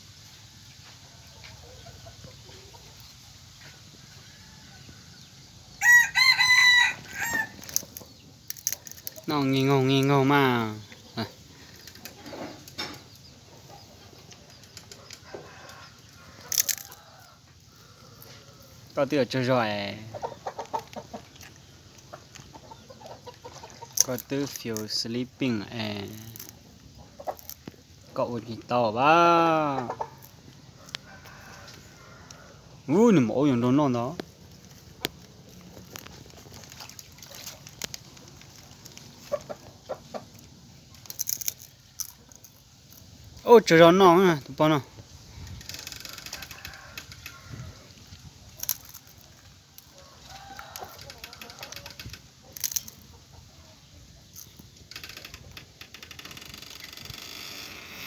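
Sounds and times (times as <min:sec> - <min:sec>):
chickens clucking: 0:00.3 - 0:04.0, 0:07.2 - 0:41.4, 0:44.0 - 0:54.8
chicken clucking: 0:19.7 - 0:24.2, 0:29.3 - 0:32.3, 0:38.1 - 0:40.5
small clicks: 0:48.0 - 0:53.1.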